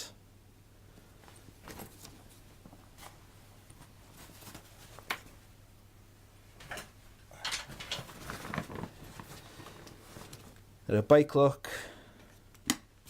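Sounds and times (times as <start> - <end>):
fabric rustling: 1.1 - 5.5, 7.6 - 10.6.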